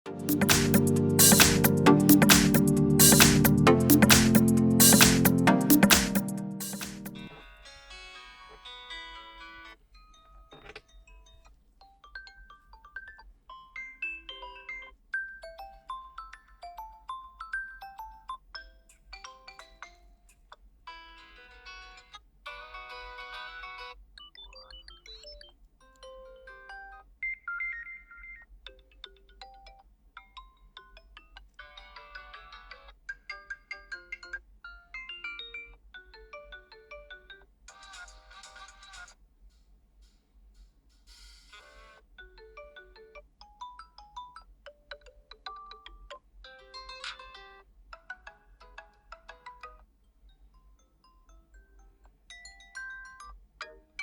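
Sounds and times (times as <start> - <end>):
phone ringtone melodies: 0.1 - 7.3.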